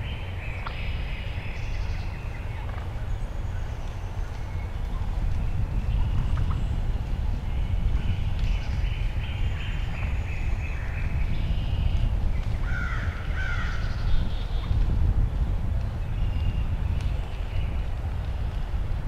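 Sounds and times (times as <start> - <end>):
bird calls: 0.0 - 14.8
steady low rumble: 0.0 - 19.0.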